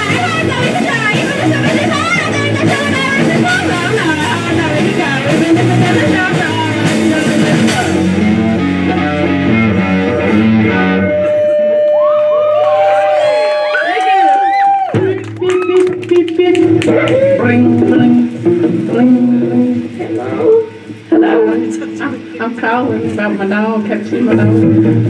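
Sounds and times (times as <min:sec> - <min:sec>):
person singing: 0:00.0 - 0:09.4, 0:14.9 - 0:25.0
steady tone with sliding pitches: 0:00.0 - 0:13.3
rock band playing live: 0:00.0 - 0:13.8, 0:14.5 - 0:25.0
electric guitar: 0:00.0 - 0:25.0.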